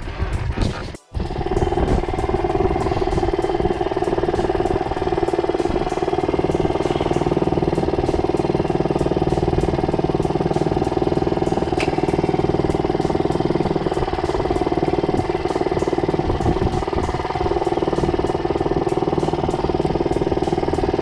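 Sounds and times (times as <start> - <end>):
outboard motor running: 0.0 - 21.0.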